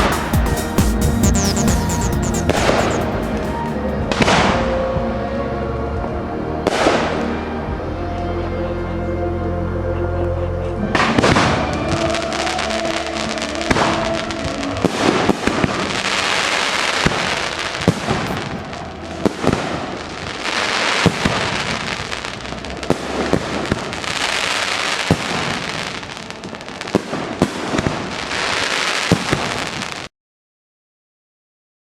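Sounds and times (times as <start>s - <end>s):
fireworks crackling hiss: 0.0s - 3.8s, 12.0s - 30.1s
fireworks bangs: 0.0s - 4.6s, 11.0s - 30.1s.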